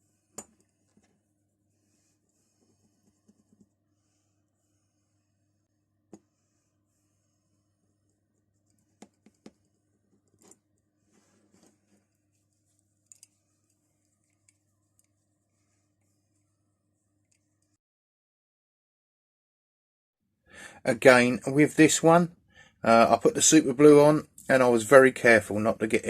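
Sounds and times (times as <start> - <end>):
low steady hum: 0.0 - 17.8.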